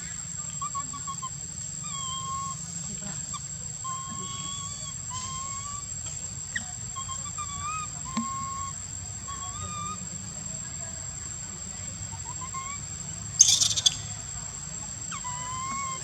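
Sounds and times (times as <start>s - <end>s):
baby monkey crying: 0.5s - 10.0s, 13.4s - 14.2s, 15.1s - 16.0s.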